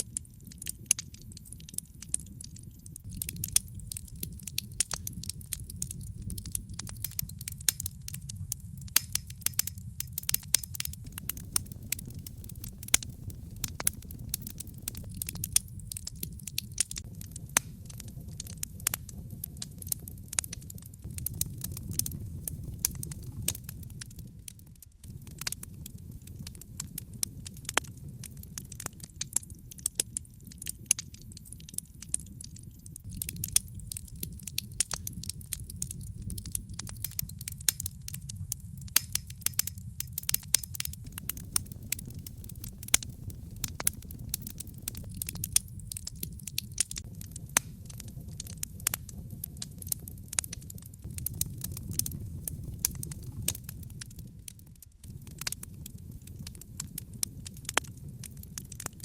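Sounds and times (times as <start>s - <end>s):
fire crackling and popping: 0.0s - 59.0s
fire flames rumbling: 0.0s - 59.0s.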